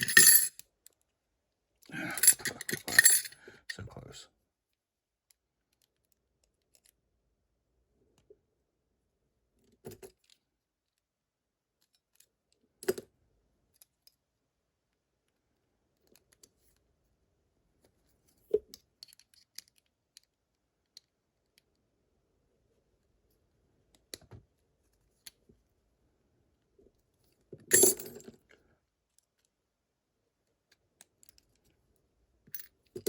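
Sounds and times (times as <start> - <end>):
metal tools clicking on a lock: 2.2 - 3.4.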